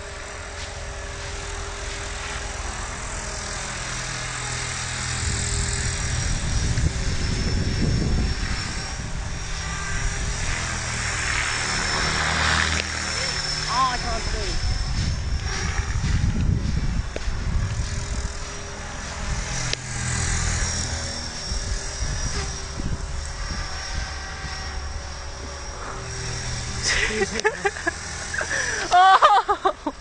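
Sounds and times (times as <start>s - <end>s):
helicopter rotor whine: 0.0s - 30.0s
wind buffeting: 1.0s - 28.8s
person speaking: 13.6s - 14.6s.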